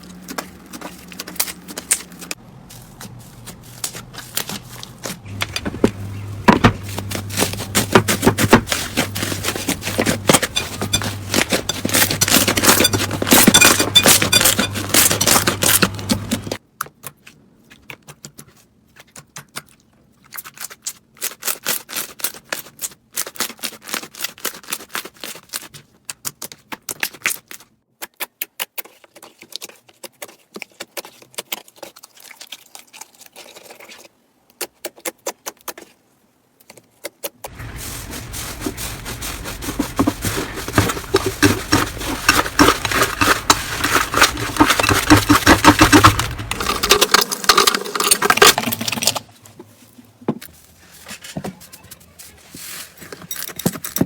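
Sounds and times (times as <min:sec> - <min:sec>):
low hum: 0:37.6 - 0:47.2.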